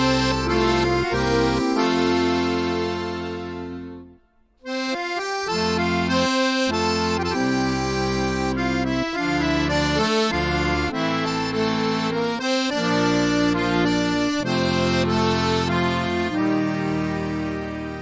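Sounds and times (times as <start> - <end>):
accordion melody: 0.0 - 18.0
sustained bass notes: 0.0 - 18.0.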